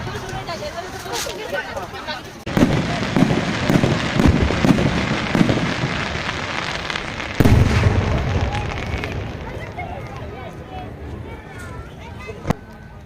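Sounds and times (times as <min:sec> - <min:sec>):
fireworks bangs and crackles: 0:00.0 - 0:12.9
deep firework boom: 0:02.5 - 0:09.9.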